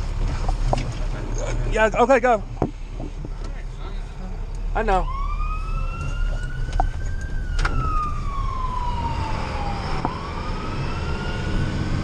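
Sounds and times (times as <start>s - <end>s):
truck engine rumble: 0.0s - 12.0s
fire engine siren wailing: 4.8s - 12.0s.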